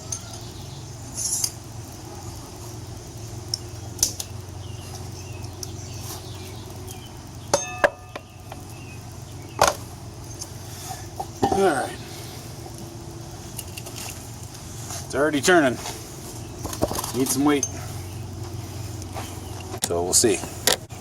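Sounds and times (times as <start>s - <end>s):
low steady hum: 0.0s - 21.0s
metal clinks and knocks: 7.5s - 8.6s, 16.6s - 17.9s.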